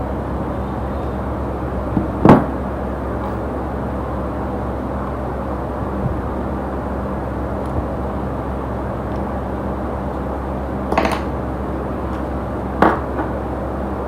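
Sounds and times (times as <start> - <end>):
steady hum and hiss: 0.0 - 14.0.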